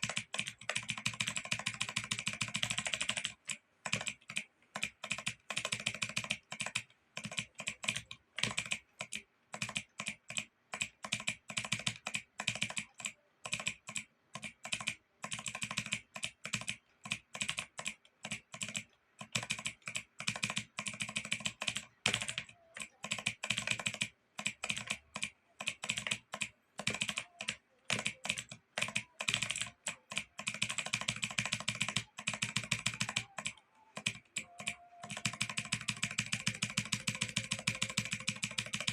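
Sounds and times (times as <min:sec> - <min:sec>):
computer keyboard key clicks: 0:00.0 - 0:38.9.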